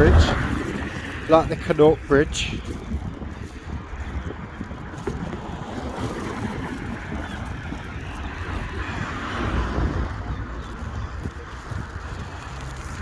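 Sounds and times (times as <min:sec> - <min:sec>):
vehicle passing close by: 0:00.0 - 0:01.5
traffic rumble: 0:00.0 - 0:13.0.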